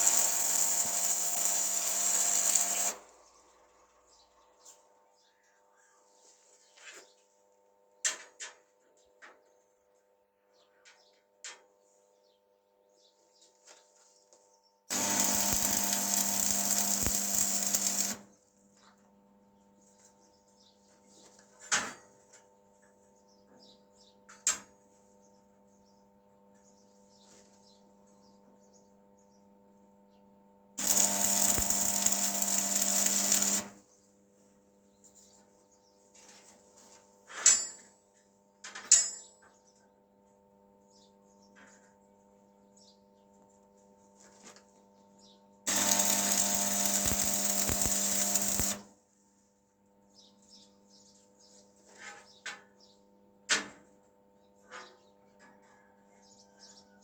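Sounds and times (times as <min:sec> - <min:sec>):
power tool motor running: 0:00.0 - 0:03.2, 0:14.9 - 0:18.3, 0:30.8 - 0:33.8, 0:45.7 - 0:48.9.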